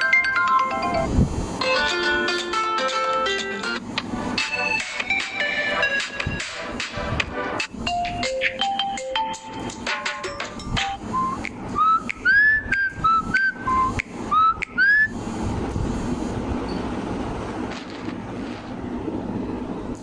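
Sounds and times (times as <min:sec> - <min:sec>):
steady hiss: 0:11.0 - 0:20.0.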